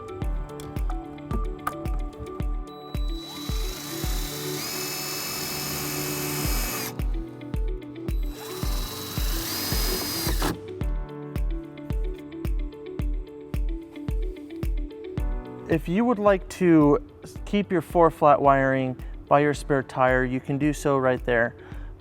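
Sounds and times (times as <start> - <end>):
background music with steady beat: 0.0 - 22.0
cordless drill driving screw: 3.0 - 7.2, 8.1 - 10.6.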